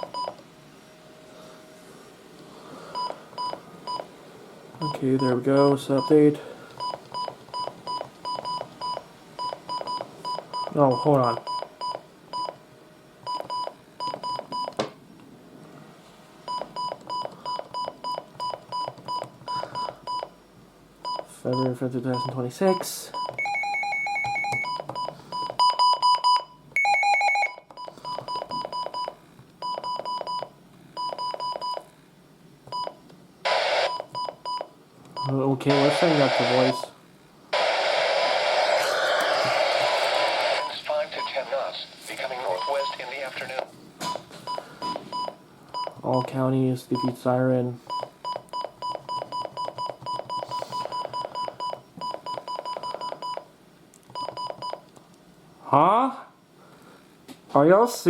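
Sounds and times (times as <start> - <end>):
rapid high electronic beeps: 38.5 - 43.2.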